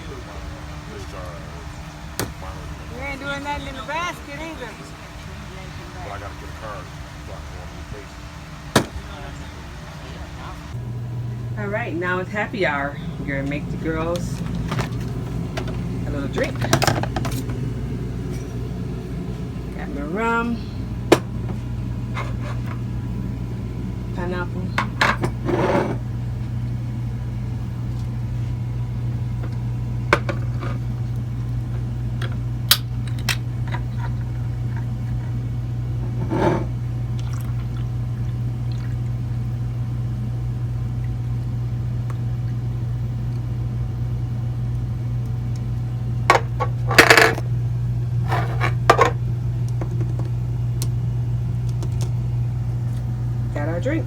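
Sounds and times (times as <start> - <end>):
steady low hum: 0.0 - 54.0.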